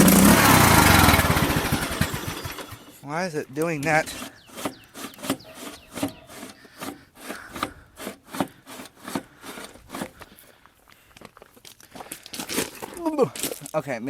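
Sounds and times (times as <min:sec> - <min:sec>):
rough scraping strokes: 0:00.0 - 0:10.6.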